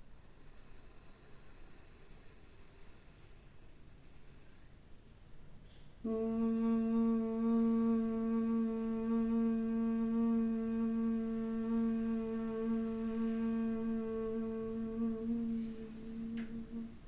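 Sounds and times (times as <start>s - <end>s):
woman humming: 6.1s - 17.0s.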